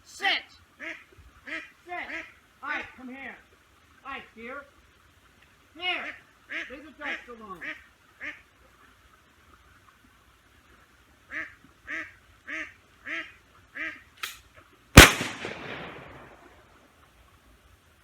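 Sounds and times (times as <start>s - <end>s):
ducks quacking: 0.8s - 2.8s, 5.8s - 8.5s, 11.3s - 14.1s
shotgun blast: 15.0s - 16.6s.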